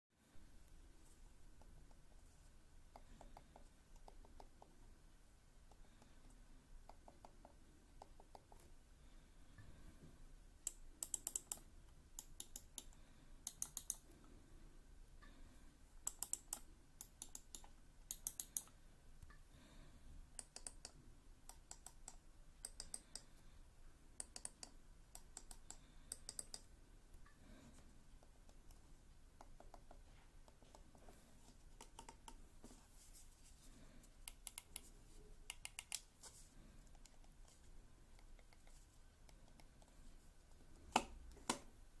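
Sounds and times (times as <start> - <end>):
computer mouse clicking: 2.9 - 4.7, 10.6 - 14.1, 16.0 - 18.8, 20.4 - 23.3, 24.2 - 27.3, 28.2 - 30.9, 31.7 - 32.4, 34.2 - 36.1, 36.8 - 40.0.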